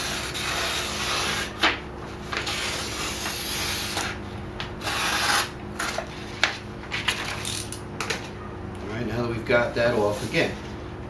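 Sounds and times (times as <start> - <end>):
razor blade slicing paper: 0.0 - 4.2, 4.8 - 6.5.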